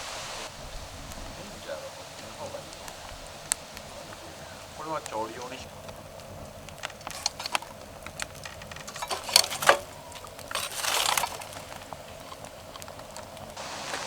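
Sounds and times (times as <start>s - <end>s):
camp gear clicking and knocking: 5.8s - 13.4s.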